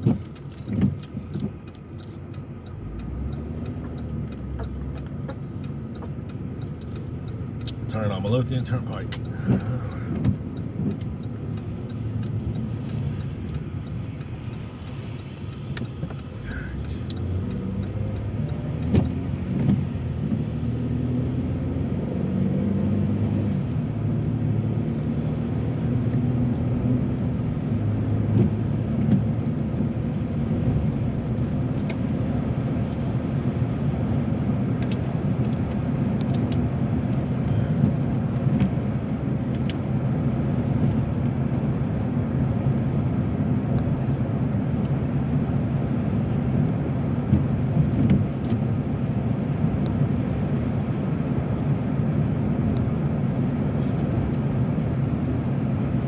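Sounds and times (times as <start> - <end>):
car engine and road noise: 0.0 - 56.0.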